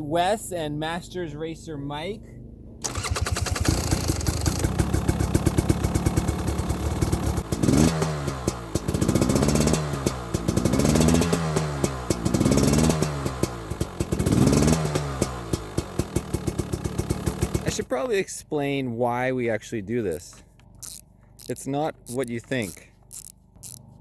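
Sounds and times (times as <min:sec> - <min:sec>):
dirt bike engine revving: 0:02.9 - 0:17.8.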